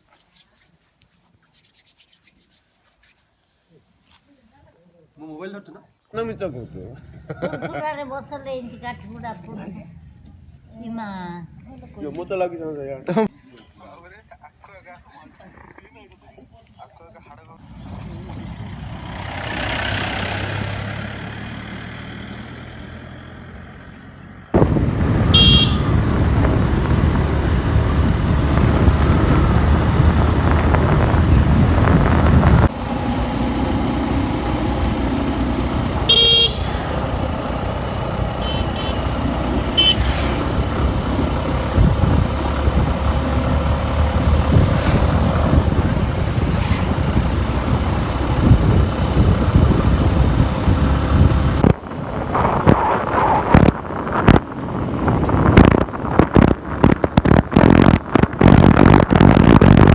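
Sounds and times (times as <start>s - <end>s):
motorcycle engine: 17.8s - 52.7s
vehicle horn honking: 24.6s - 28.9s, 35.8s - 37.4s, 38.1s - 40.8s
wind rush: 24.6s - 32.7s, 40.4s - 43.2s, 44.0s - 59.9s.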